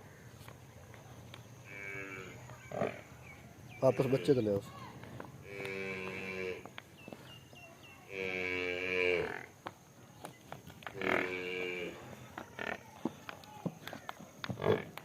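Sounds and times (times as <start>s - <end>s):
water buffalo mooing: 5.4s - 6.7s, 8.1s - 9.5s, 11.0s - 12.0s.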